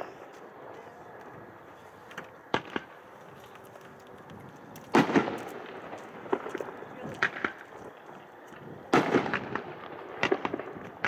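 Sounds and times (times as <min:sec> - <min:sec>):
small pops and crackles: 0:02.1 - 0:11.0
fireworks bangs: 0:02.4 - 0:03.1, 0:04.8 - 0:08.0, 0:08.6 - 0:11.0.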